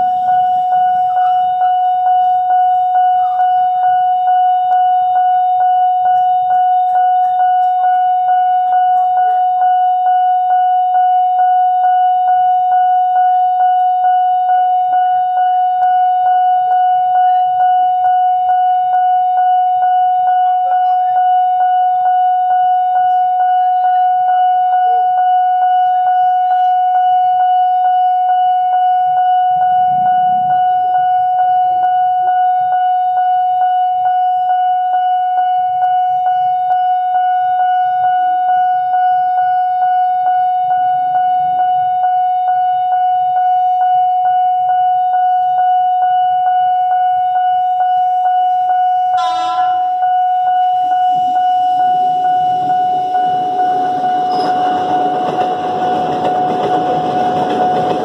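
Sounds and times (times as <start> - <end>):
level crossing warning siren: 0.0 - 58.0.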